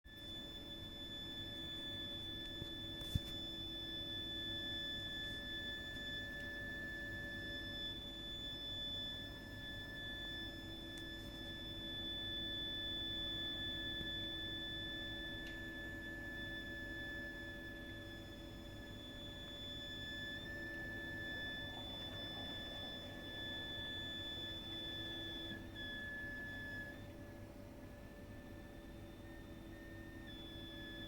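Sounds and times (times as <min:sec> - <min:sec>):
high-pitched shrieking heating tone: 0:00.1 - 0:31.0.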